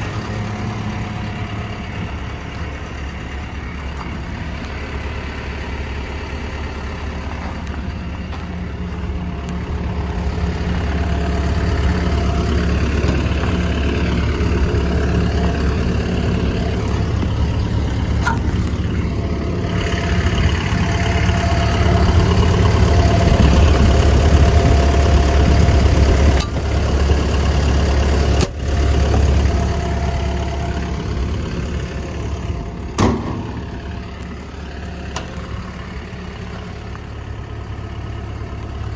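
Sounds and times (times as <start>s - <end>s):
excavator diesel engine running: 0.0s - 38.9s
sharp clicks or knocks: 33.0s - 34.3s.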